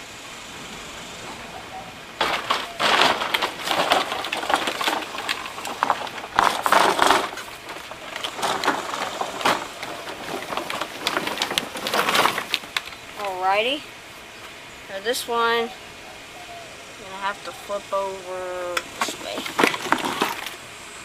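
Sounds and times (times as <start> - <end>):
lawn mower clattering and scraping: 0.6 - 13.8, 18.3 - 20.6.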